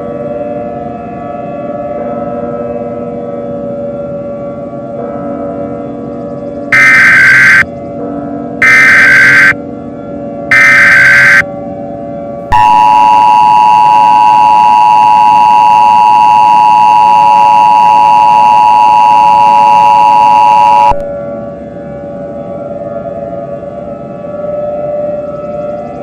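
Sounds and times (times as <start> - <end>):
screeching data tones: 6.8 - 7.6, 8.6 - 9.6, 10.5 - 11.4, 12.5 - 21.0
two-tone alert signal: 6.8 - 7.6, 8.6 - 9.6, 10.5 - 11.4, 12.5 - 21.0.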